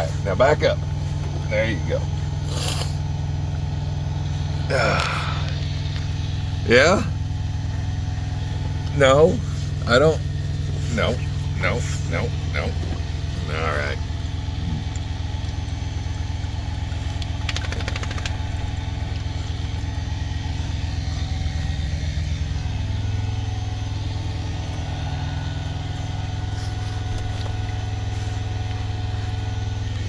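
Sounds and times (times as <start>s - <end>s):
diesel engine idling: 0.0s - 30.0s
rapid rattle of clicks: 16.4s - 19.3s.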